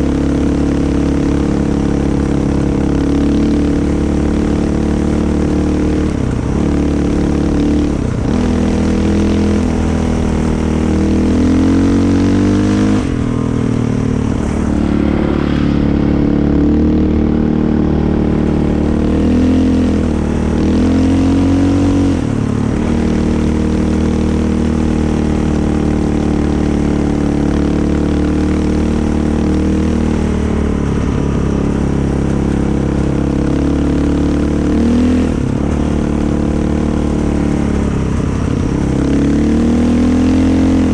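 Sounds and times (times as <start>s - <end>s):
engine revving while driving: 0.0s - 40.9s.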